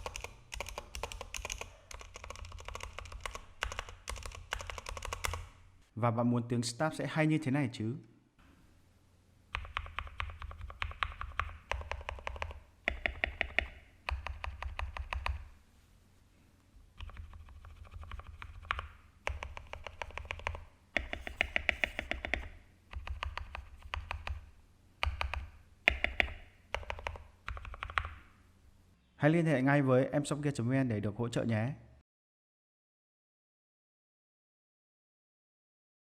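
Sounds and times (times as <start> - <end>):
mechanical keyboard keystrokes: 0.0 - 5.5, 9.6 - 15.4, 17.0 - 24.4, 25.0 - 28.2.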